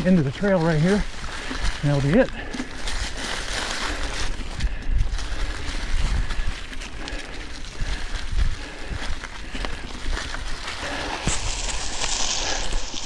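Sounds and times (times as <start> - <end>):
bike rattling: 0.0 - 13.0
bike tyres rolling over leaves: 0.0 - 13.0
wind buffeting microphone: 4.0 - 10.6.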